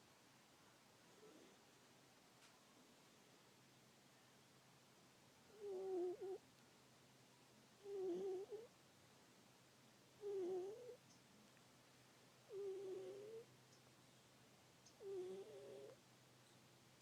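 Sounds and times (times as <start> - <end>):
cat making soft calls: 5.5 - 6.4, 7.8 - 8.7, 10.2 - 11.0, 12.5 - 13.5, 15.0 - 16.0.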